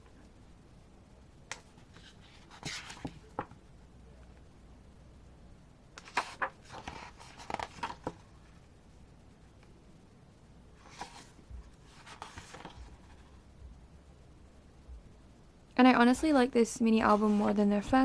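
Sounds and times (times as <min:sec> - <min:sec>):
paper cards handled by hand: 0:01.5 - 0:03.6, 0:06.0 - 0:08.3, 0:10.8 - 0:13.4.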